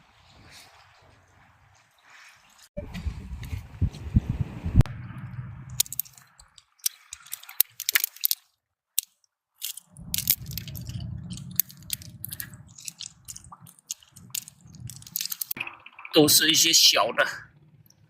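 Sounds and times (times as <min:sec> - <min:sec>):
low rumble: 0:02.8 - 0:06.6, 0:09.7 - 0:15.9
shells and stones clicking: 0:05.7 - 0:15.6.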